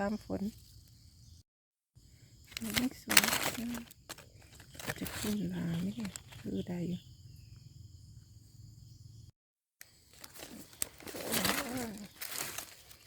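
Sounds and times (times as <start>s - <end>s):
rustling in dry leaves: 2.5s - 6.6s, 10.0s - 13.0s.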